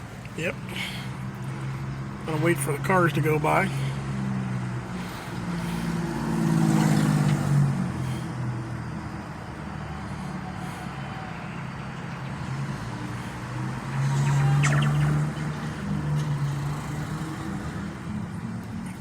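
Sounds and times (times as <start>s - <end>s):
road traffic passing: 0.0s - 19.0s
steady engine hum: 0.0s - 19.0s.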